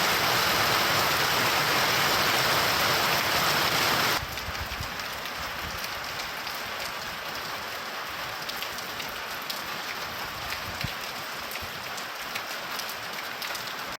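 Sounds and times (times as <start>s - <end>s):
steady rain falling: 0.0s - 14.0s
raindrops ticking on a surface: 4.2s - 14.0s.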